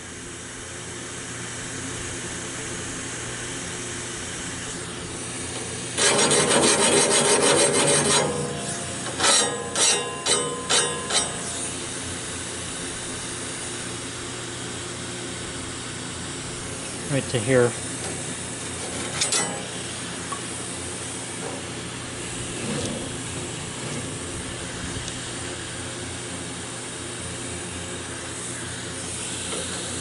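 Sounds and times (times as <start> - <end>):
file rasping on saw blade teeth: 6.0 - 11.7.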